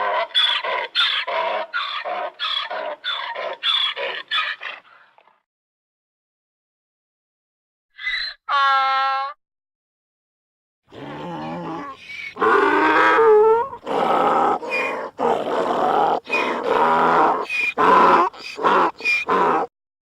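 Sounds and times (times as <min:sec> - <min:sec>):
donkey braying: 0:00.1 - 0:04.9, 0:08.0 - 0:09.4, 0:10.9 - 0:19.7.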